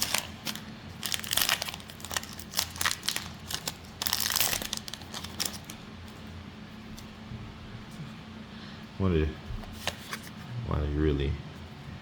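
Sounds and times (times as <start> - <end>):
foil wrapper crinkling: 0.0 - 5.8.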